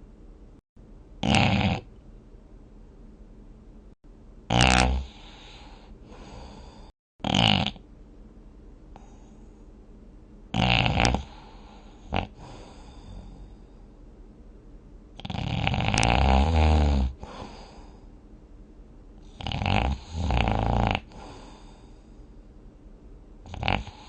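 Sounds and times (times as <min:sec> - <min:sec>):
person snoring: 0:01.2 - 0:01.9, 0:04.5 - 0:07.8, 0:10.5 - 0:13.7, 0:15.2 - 0:18.0, 0:19.2 - 0:22.0, 0:23.4 - 0:24.0.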